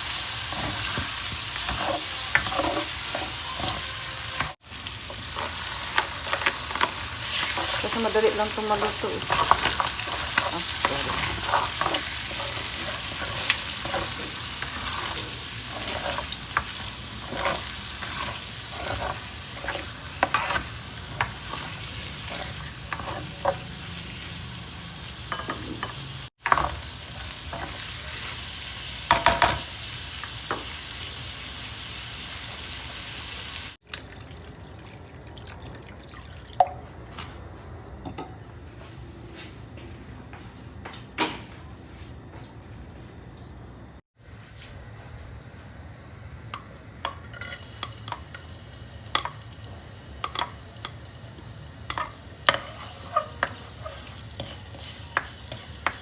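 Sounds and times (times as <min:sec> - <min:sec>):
food sizzling in a frying pan: 0:00.0 - 0:33.9, 0:46.0 - 0:56.0
utensil scraping a pan: 0:00.4 - 0:04.6, 0:05.4 - 0:24.0.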